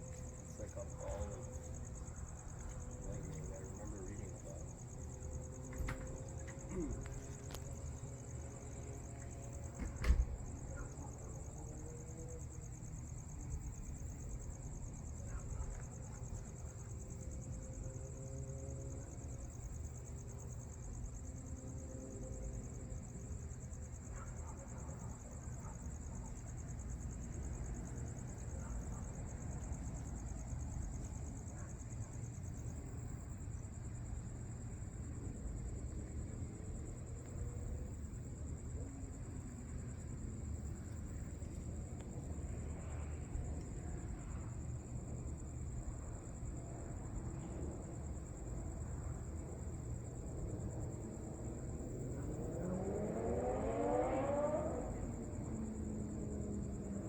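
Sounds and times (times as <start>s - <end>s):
night insects chirping: 0.0s - 57.0s.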